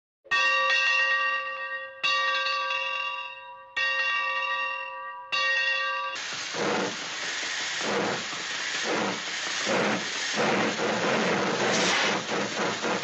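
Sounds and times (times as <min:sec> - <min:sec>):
loud hiss: 0:06.2 - 0:13.0.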